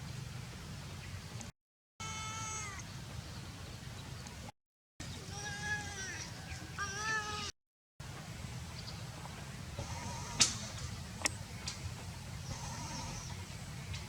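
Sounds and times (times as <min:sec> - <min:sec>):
faint wavering animal calls: 0:09.8 - 0:10.8, 0:12.4 - 0:13.5.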